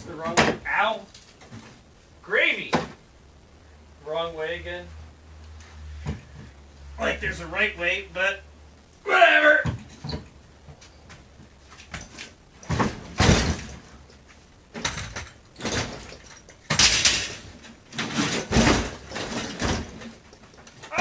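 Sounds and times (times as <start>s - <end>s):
refrigerator cabinet scraping and knocking: 11.8s - 14.0s, 15.0s - 16.2s, 16.8s - 20.2s.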